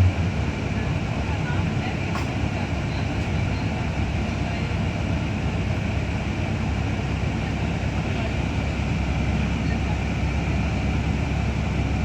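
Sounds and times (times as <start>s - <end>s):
bus engine and road noise: 0.0s - 12.0s.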